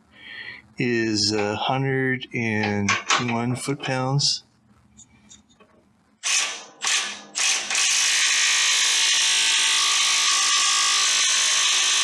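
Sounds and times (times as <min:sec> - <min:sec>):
impact wrench hammering: 0:06.2 - 0:08.4.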